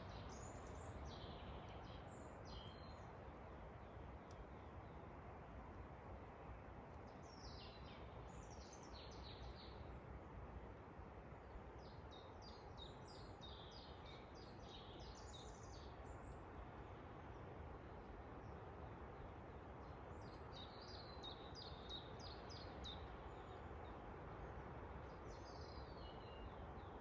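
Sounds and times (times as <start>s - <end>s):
songbirds chirping: 11.4s - 27.0s.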